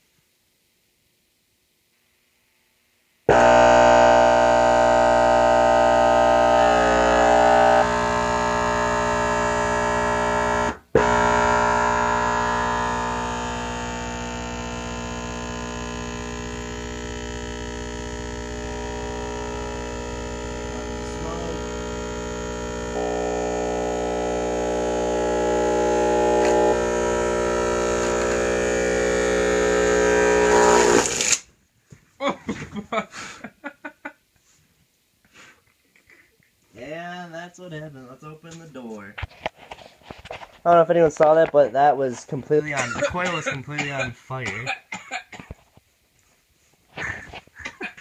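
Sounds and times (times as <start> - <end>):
harsh electrical hum-buzz: 3.3 - 31.4, 42.2 - 44.5
subwoofer click: 26.1 - 31.4.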